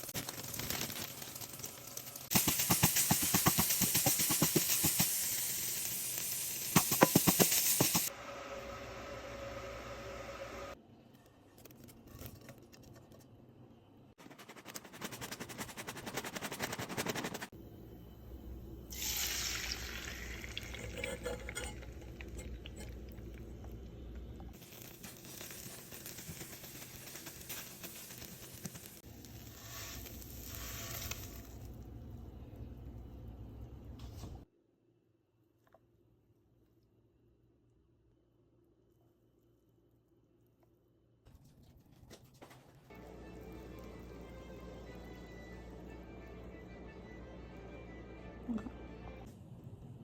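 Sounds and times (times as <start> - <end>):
food sizzling in a pan: 0.0 - 10.6, 18.9 - 21.0, 24.6 - 31.7.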